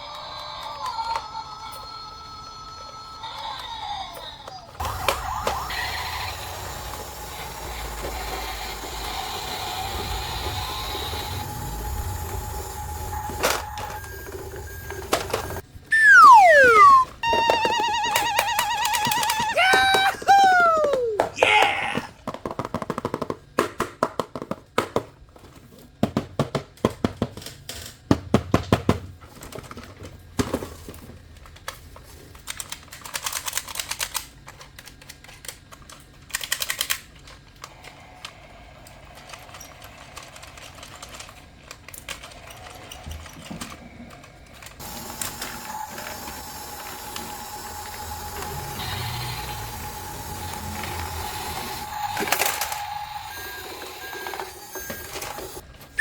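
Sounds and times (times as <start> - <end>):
plastic toys clicking and knocking: 13.4 - 48.0, 50.5 - 55.5.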